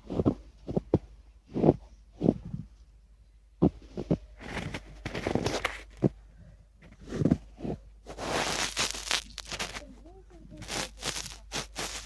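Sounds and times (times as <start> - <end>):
snow crunching and scraping: 3.6 - 6.1, 6.9 - 9.9, 10.5 - 12.0.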